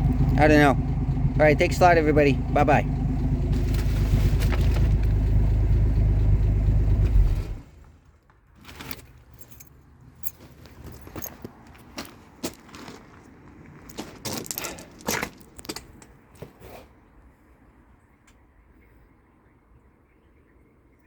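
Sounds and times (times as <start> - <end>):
keys jangling: 9.2 - 11.5, 13.9 - 16.1.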